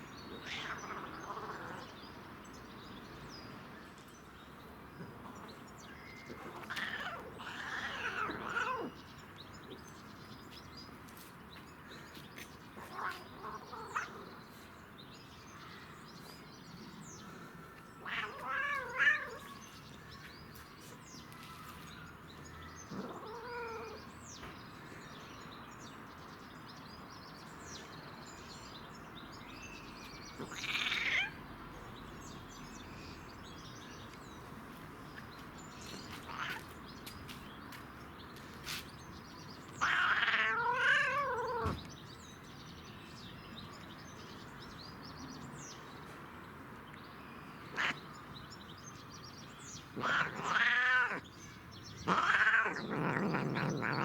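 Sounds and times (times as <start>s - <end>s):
cat meowing and yowling: 0.4s - 1.9s, 6.3s - 8.9s, 18.0s - 19.6s, 22.9s - 24.0s, 30.4s - 31.4s, 39.8s - 41.8s, 47.8s - 48.0s, 50.0s - 51.2s, 52.0s - 54.0s.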